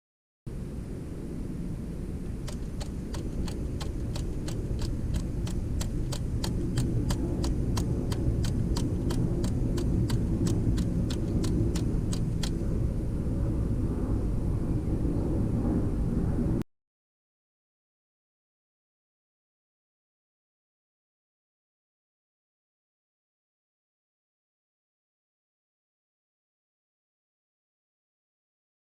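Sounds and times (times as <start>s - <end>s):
low hum: 0.5s - 16.6s
split-flap display clicking: 2.4s - 12.7s.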